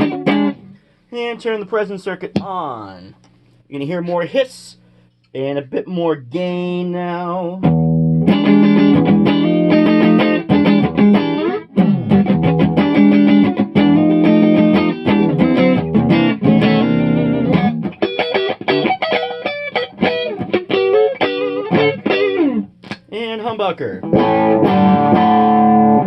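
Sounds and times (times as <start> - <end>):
electric guitar playing: 0.0 - 1.0, 7.6 - 26.0.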